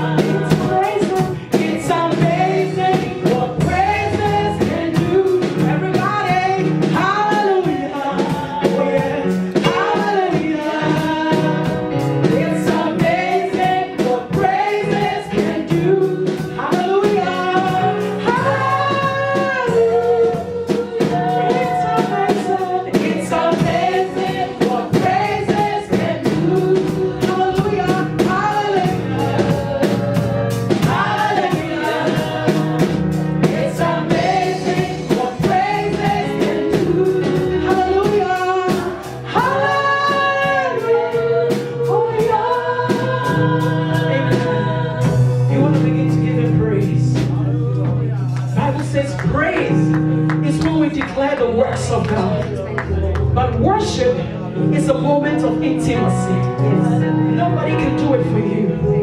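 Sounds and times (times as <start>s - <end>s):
voices singing together: 0.0s - 45.9s
band with steady beat: 0.0s - 59.0s.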